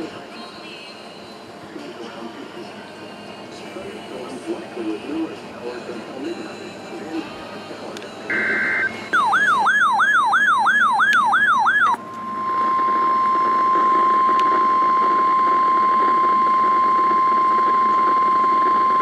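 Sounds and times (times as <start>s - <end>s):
electronic siren warble: 8.3s - 19.0s
steady warning alarm tone: 8.3s - 19.0s.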